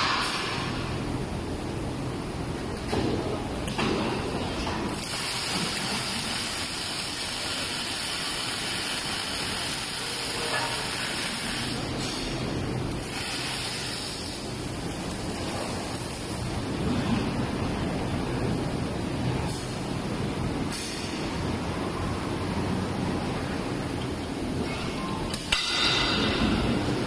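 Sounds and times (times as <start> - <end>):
welding arc hissing: 4.9 - 12.2, 12.9 - 16.4
welding machine low hum: 4.9 - 19.8.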